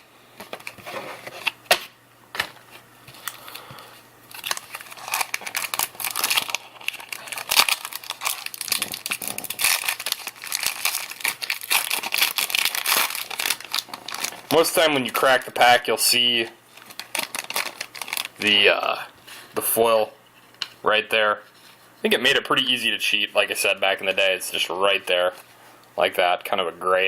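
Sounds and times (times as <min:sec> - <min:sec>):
card pack wrappers crinkling: 0:02.3 - 0:18.6.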